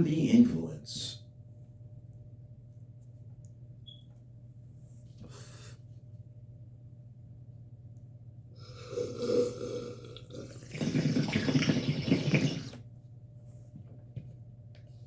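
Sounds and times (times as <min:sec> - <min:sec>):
water bong bubbling: 0:08.7 - 0:12.8.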